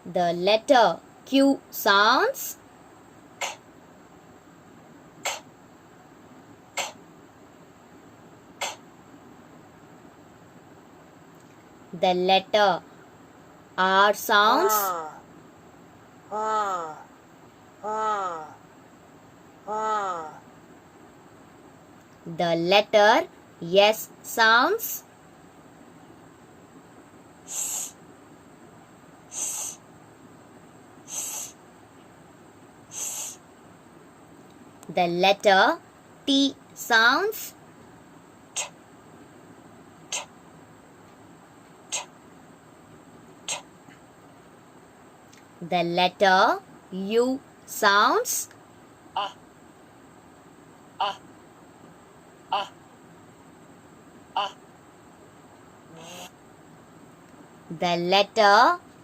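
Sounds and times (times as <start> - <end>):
woman hissing sss sound: 3.4 - 3.6, 5.2 - 5.5, 6.8 - 7.0, 8.6 - 8.8, 27.5 - 28.0, 29.3 - 29.8, 31.1 - 31.6, 32.9 - 33.4, 38.6 - 38.8, 40.1 - 40.3, 41.9 - 42.1, 43.5 - 43.7, 55.9 - 56.3
woman making breathy k sound: 3.4 - 3.6, 5.2 - 5.5, 6.8 - 7.0, 8.6 - 8.8, 27.5 - 28.0, 29.3 - 29.8, 31.1 - 31.6, 38.6 - 38.8, 40.1 - 40.3, 41.9 - 42.1, 43.5 - 43.7.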